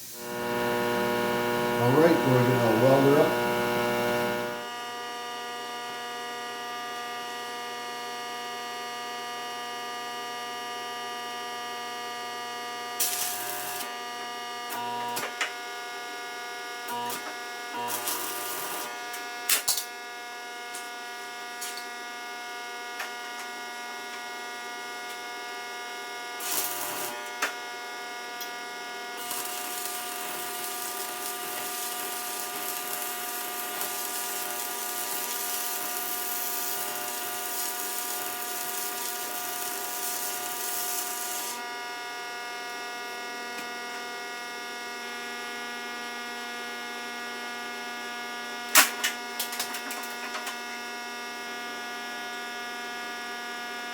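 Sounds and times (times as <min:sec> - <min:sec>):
crackling welding arc: 0:00.0 - 0:04.7, 0:13.0 - 0:13.9, 0:16.9 - 0:19.9, 0:26.4 - 0:27.6, 0:29.2 - 0:41.7
arc welder humming: 0:00.0 - 0:04.9, 0:12.8 - 0:15.8, 0:16.8 - 0:19.9, 0:26.3 - 0:41.8.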